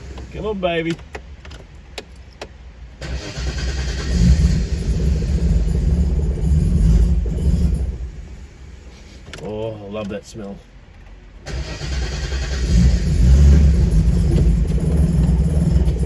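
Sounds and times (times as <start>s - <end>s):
engine running unevenly: 3.8s - 9.4s, 12.2s - 16.0s
low rumble: 4.1s - 9.0s, 12.6s - 16.0s.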